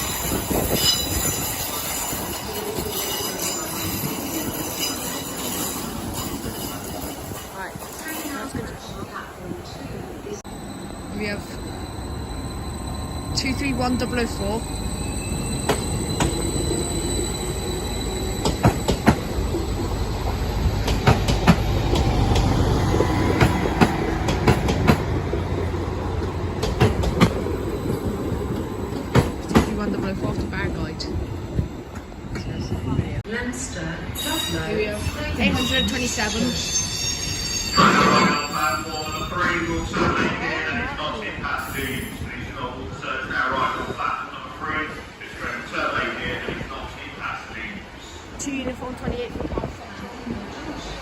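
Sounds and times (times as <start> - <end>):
train rolling rumble: 0.0 - 51.0
high-pitched wheel squeals: 10.5 - 20.1, 34.2 - 40.6.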